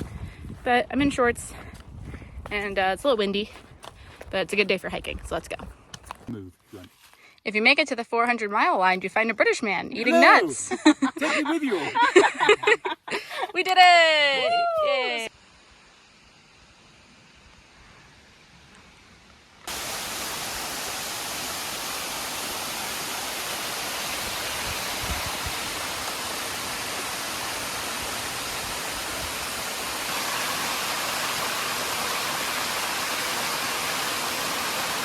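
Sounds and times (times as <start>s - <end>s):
waterfall rushing: 19.7s - 35.0s.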